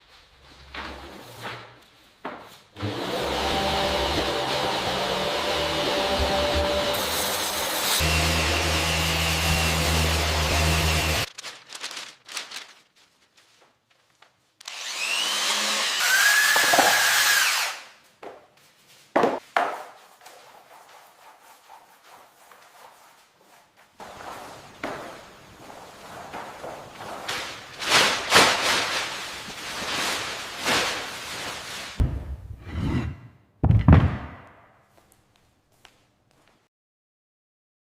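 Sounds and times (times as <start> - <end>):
electric power tool whining: 2.8 - 11.3, 14.6 - 17.8
scraping strokes: 19.8 - 32.0.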